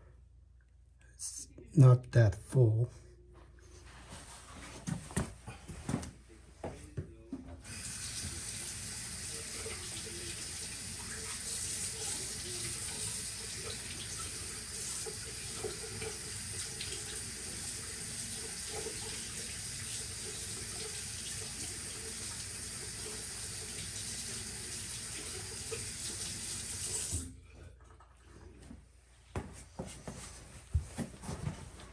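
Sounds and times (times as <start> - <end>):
tap water running into sink: 7.6 - 27.3.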